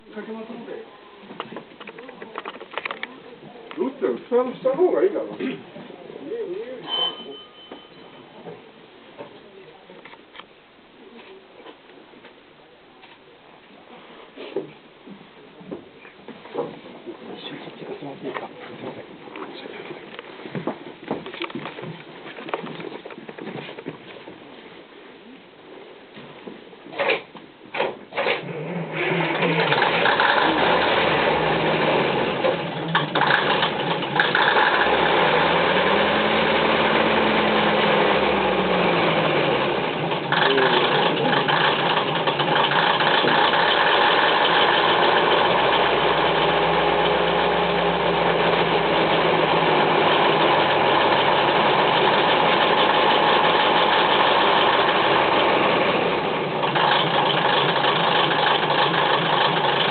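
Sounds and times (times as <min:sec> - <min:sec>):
diesel engine idling: 0:29.7 - 0:59.9.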